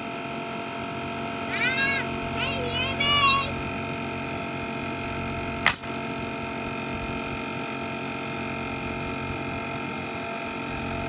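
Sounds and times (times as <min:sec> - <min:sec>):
air compressor humming: 0:00.0 - 0:11.0
nail gun shot: 0:05.7 - 0:05.9.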